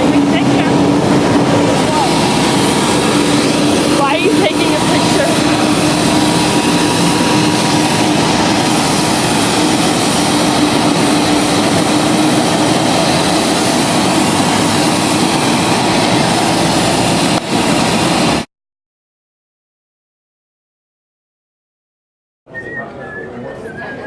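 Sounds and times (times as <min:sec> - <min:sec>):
jet engines and airflow rush: 0:00.0 - 0:18.5.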